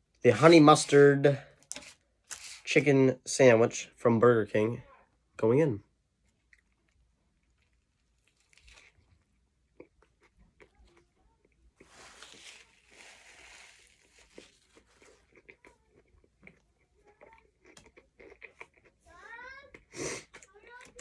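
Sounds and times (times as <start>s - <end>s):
person chewing sandwich: 1.7s - 2.7s, 6.2s - 19.1s.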